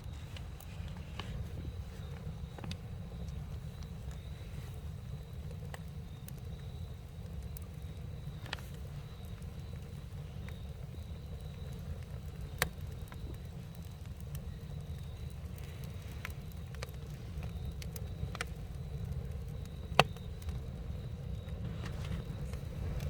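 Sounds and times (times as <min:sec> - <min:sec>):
campfire crackling: 0:00.0 - 0:23.0.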